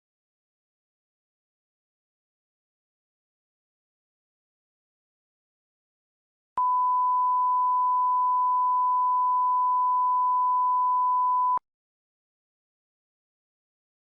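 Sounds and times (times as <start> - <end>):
electronic beep tone: 6.6 - 11.6.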